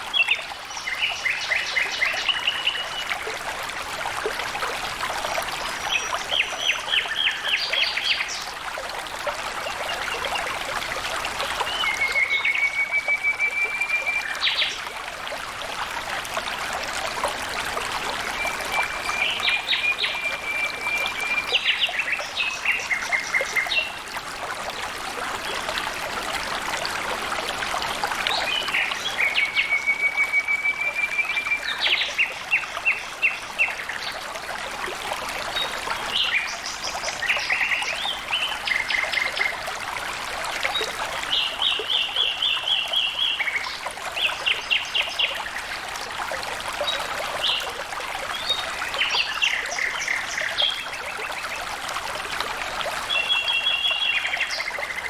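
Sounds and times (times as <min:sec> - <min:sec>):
water trickling and splashing: 0:00.0 - 0:55.0
drawn-out bird whistle: 0:29.4 - 0:31.6.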